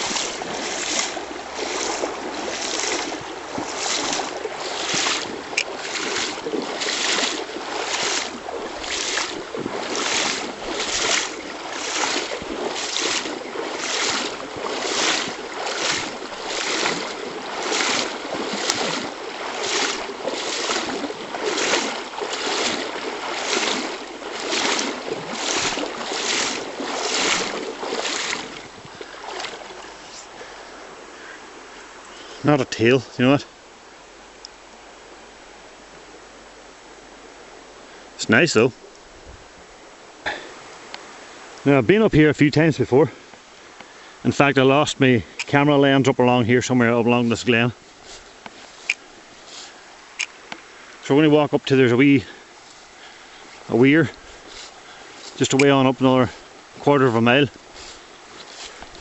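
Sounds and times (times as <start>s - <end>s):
footsteps through wet grass: 0.0s - 30.7s, 45.2s - 59.0s
river flowing: 0.0s - 59.0s.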